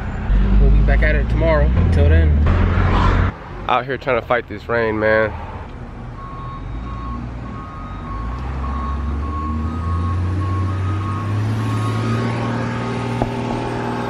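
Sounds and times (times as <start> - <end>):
electronic warning beep: 6.2 - 12.3.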